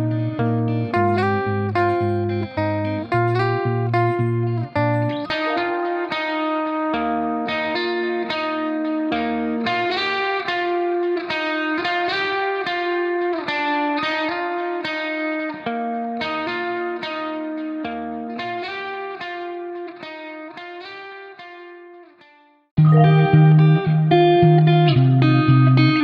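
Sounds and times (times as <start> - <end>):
picked guitar music: 0.0 - 26.0
louder music: 22.8 - 24.0.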